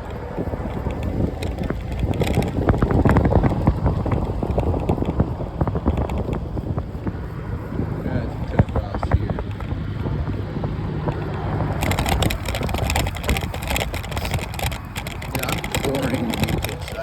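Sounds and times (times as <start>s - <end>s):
clicks and rattles: 0.0s - 7.3s, 8.0s - 17.0s
wind buffeting microphone: 0.0s - 17.0s.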